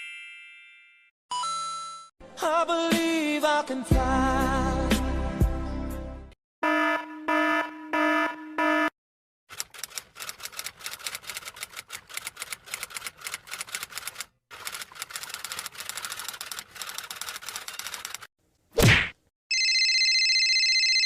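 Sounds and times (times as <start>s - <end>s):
rapid key clicks: 9.5s - 18.3s.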